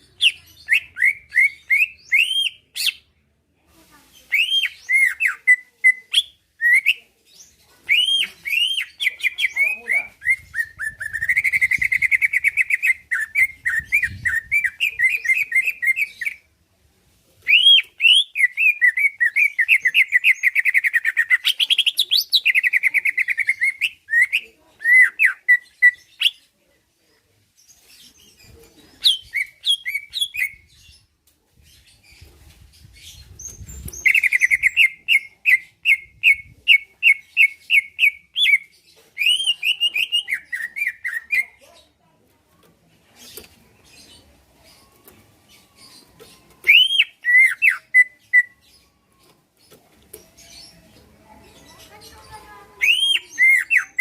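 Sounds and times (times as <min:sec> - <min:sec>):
bird singing trills: 0:45.6 - 0:49.1.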